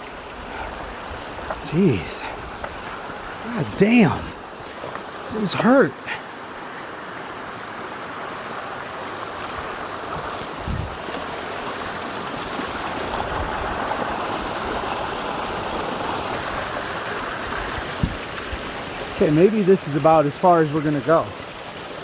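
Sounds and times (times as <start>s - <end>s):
waterfall rushing: 0.0s - 22.0s.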